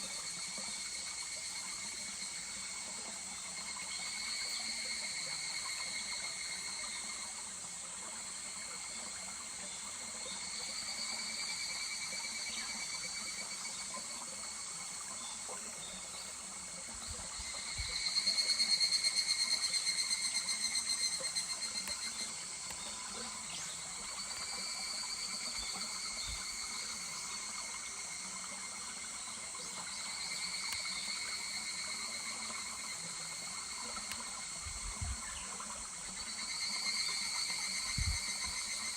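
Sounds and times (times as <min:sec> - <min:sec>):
cicadas calling in pulsed trills: 0:00.0 - 0:38.9
murmur of small stream: 0:00.0 - 0:38.9.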